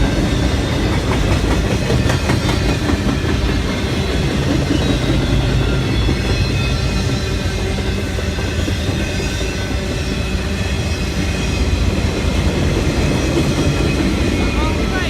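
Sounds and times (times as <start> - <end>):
train cars rumbling past: 0.0 - 15.0
wheels clicking over rail joints: 0.4 - 6.4.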